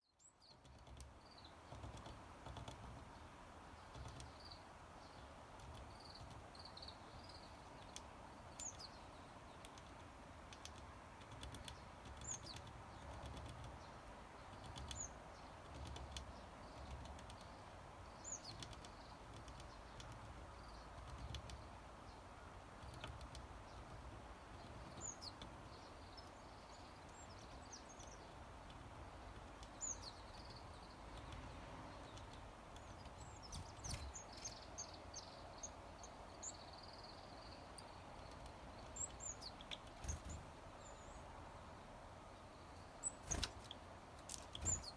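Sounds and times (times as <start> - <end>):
soft clicks: 7.8 - 8.8, 9.5 - 13.9, 27.1 - 34.9
bird chirps: 24.5 - 28.4, 29.6 - 41.3, 42.5 - 44.9.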